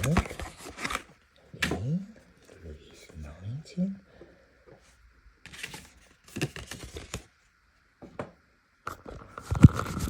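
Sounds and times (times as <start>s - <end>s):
packaging rustling and clicking: 0.0s - 1.1s, 5.5s - 7.3s.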